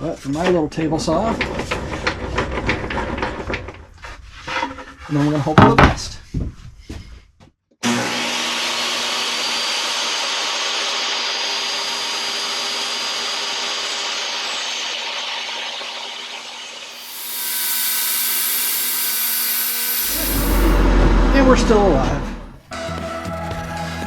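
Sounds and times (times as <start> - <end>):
table saw cutting wood: 7.8 - 22.7.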